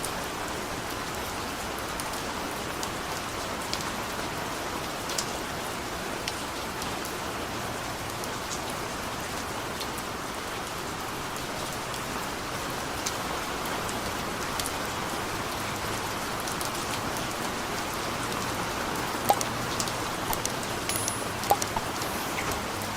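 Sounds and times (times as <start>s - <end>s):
steady rain hiss: 0.0s - 22.9s
water drips: 16.4s - 22.9s.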